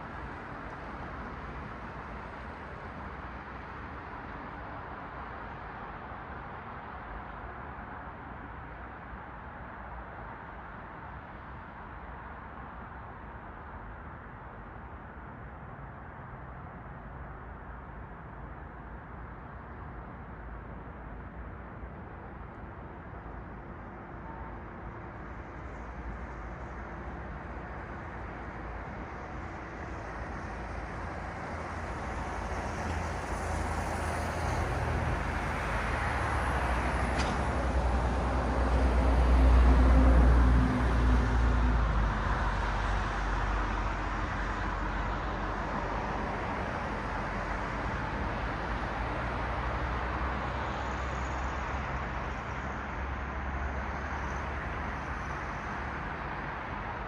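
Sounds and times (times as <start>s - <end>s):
steady traffic hum: 0.0s - 57.0s.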